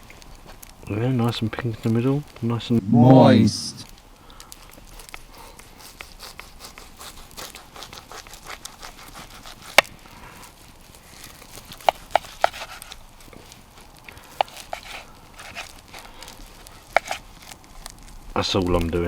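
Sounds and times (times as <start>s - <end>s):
light scraping and rustling: 4.6s - 18.1s
knife cutting meat on a board: 5.0s - 9.9s, 11.2s - 13.0s, 14.3s - 16.1s, 16.8s - 17.2s.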